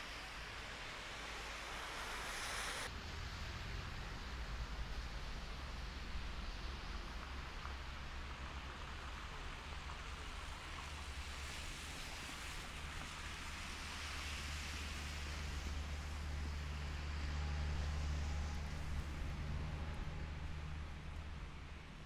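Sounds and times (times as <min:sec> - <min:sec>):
outdoor low rumble: 0:14.8 - 0:22.0.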